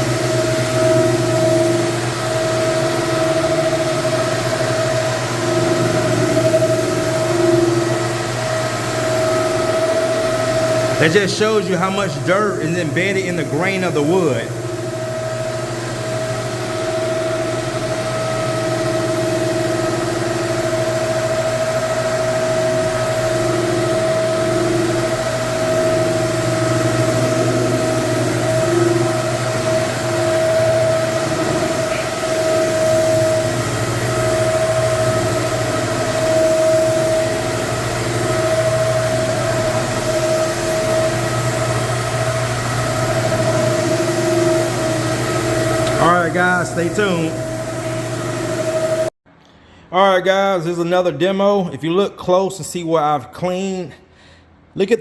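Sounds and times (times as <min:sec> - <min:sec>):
floor cleaning machine motor drone: 0:00.0 - 0:49.1.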